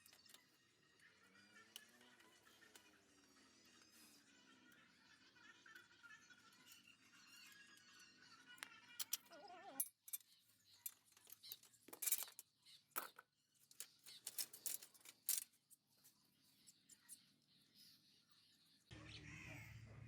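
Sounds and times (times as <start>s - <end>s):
metal hand tools clinking: 10.9s - 12.4s.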